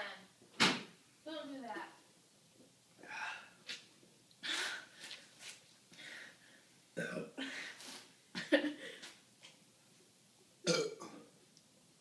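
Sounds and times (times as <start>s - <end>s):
person burping: 7.0s - 7.4s, 10.7s - 11.3s.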